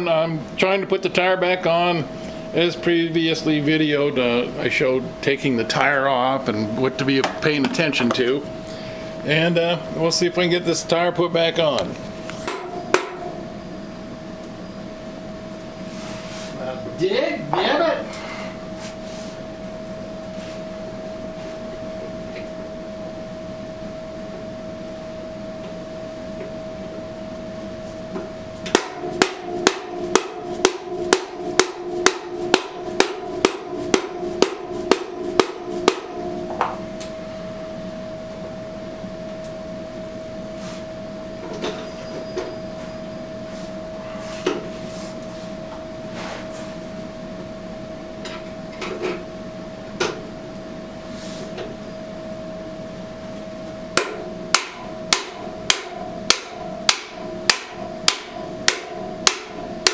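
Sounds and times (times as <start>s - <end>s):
steady hum: 0.0s - 59.9s
hammer striking metal: 12.4s - 13.4s, 28.7s - 36.8s, 54.0s - 59.9s.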